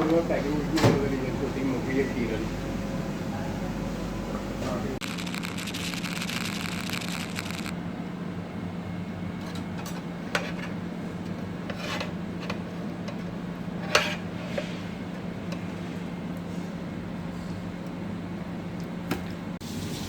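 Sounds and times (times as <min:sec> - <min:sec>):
steady low hum: 0:00.0 - 0:19.6
metal utensils scraping cookware: 0:11.7 - 0:12.6, 0:13.8 - 0:14.8.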